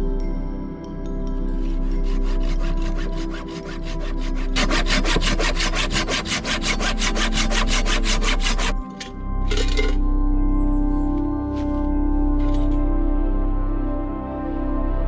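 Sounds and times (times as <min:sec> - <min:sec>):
hand saw cutting wood: 0:01.6 - 0:09.9.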